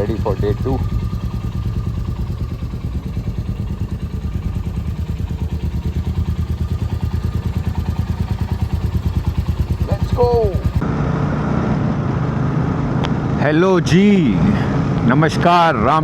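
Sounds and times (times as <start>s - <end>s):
motorcycle engine idling: 0.0s - 10.8s.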